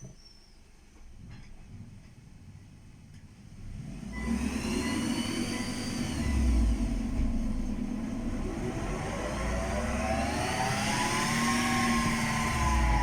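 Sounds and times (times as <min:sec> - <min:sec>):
wheel bearing humming: 0:03.7 - 0:13.0.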